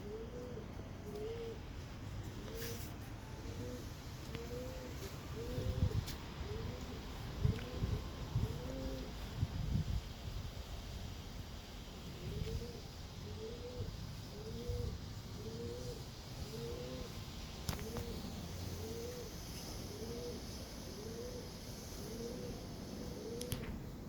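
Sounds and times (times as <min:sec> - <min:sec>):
bird hooting: 0:00.0 - 0:01.7, 0:02.4 - 0:09.2, 0:12.2 - 0:18.2, 0:18.8 - 0:23.6.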